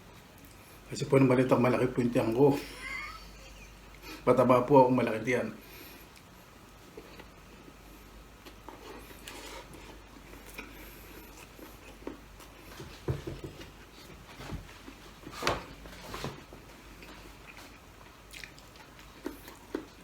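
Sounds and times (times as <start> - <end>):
person chewing: 6.9 - 7.6, 8.4 - 12.7, 16.9 - 20.0.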